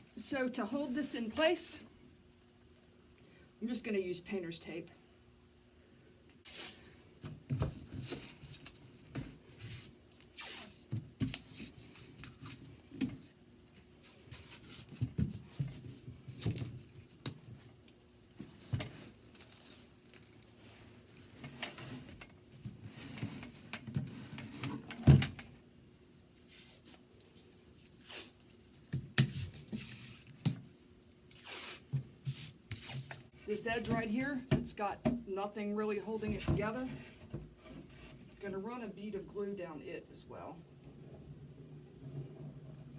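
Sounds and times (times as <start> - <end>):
tape pulled and torn: 10.2 - 11.4.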